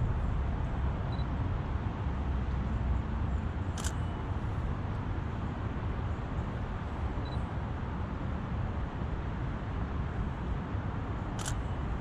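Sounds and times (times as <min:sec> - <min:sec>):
low outdoor rumble: 0:00.0 - 0:12.0
camera shutter click: 0:03.8 - 0:04.0, 0:11.4 - 0:11.7.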